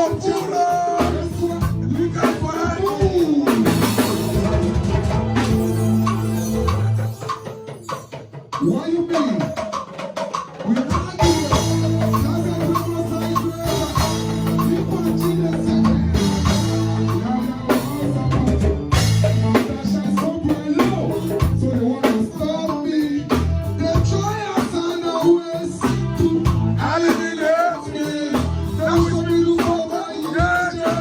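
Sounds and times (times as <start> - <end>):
held bass line: 0.0 - 7.3, 11.2 - 24.6, 25.6 - 27.2, 28.2 - 29.7, 30.5 - 31.0
drum kit with rimshots: 0.0 - 31.0.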